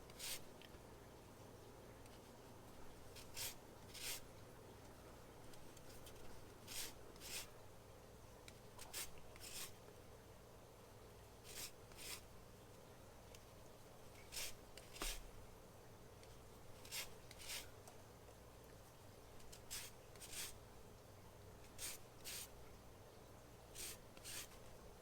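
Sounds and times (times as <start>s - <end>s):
grater scraping lemon rind: 3.1s - 4.2s, 16.8s - 17.7s.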